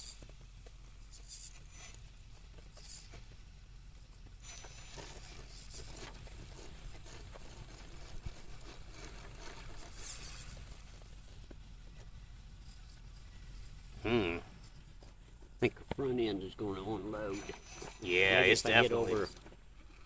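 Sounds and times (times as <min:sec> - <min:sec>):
faint high-pitched whine: 0:00.0 - 0:20.0
tyres scraping and clicking on rock: 0:04.4 - 0:11.1, 0:17.0 - 0:20.0.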